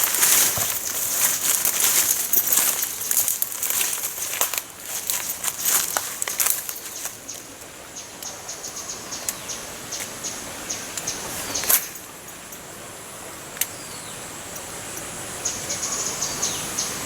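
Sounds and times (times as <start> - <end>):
crackling rustle: 0.0 - 7.7, 11.0 - 12.5.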